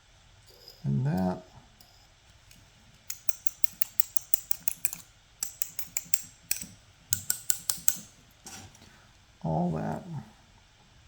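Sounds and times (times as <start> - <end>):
padlock clicking and tapping: 3.1 - 8.1.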